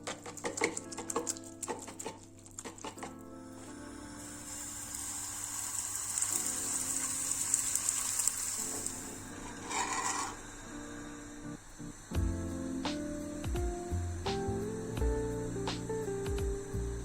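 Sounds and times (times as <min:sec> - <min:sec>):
soft background music: 0:00.0 - 0:17.0
sizzling hiss: 0:03.6 - 0:17.0.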